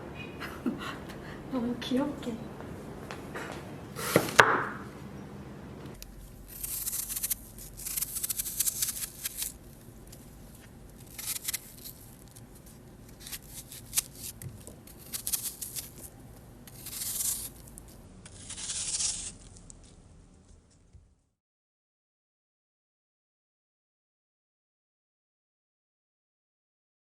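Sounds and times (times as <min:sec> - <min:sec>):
rustling and scraping: 0:05.8 - 0:21.0.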